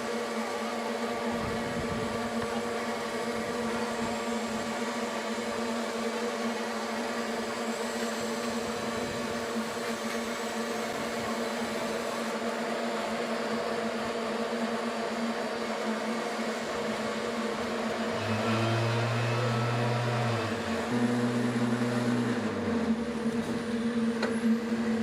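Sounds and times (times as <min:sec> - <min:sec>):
heavy machinery engine hum: 0:16.4 - 0:25.0.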